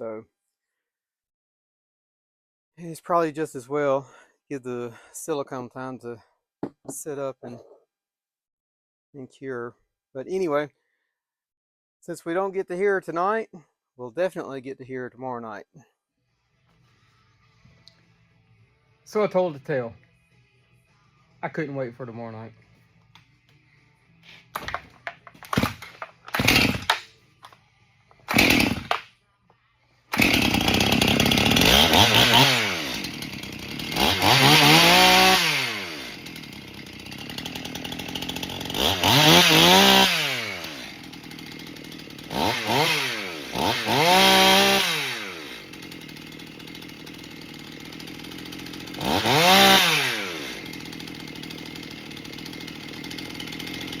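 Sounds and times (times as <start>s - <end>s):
chainsaw engine starting and revving: 24.2s - 29.1s, 30.1s - 54.0s.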